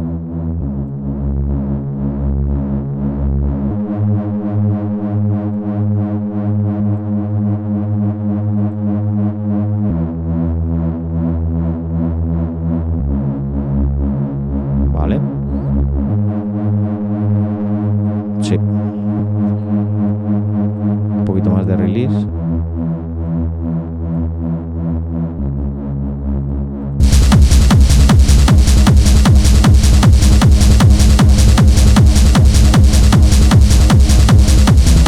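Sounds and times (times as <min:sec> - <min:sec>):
distorted bass synth notes: 0:13.9 - 0:35.0.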